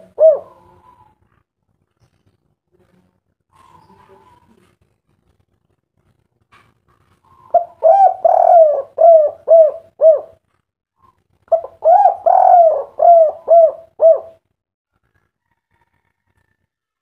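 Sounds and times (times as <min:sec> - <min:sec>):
dove cooing: 0:00.0 - 0:01.4, 0:07.2 - 0:10.4, 0:11.0 - 0:14.4.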